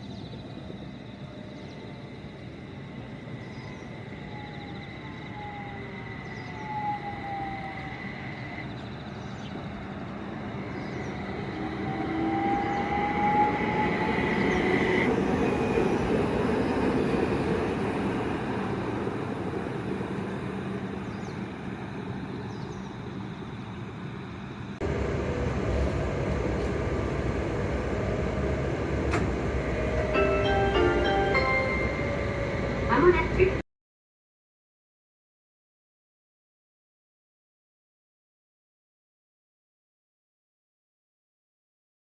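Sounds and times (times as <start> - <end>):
tram wheel and running noise: 0.4 - 33.6
tram motors whining: 2.7 - 33.6.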